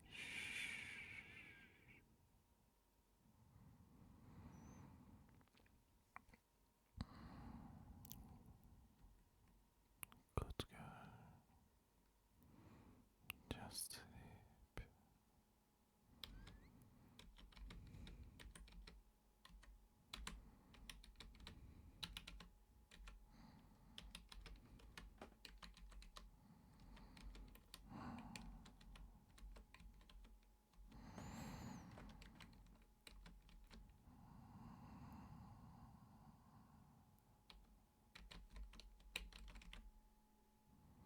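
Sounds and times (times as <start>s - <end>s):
keyboard typing: 16.2s - 23.2s, 23.9s - 33.9s, 37.4s - 40.0s.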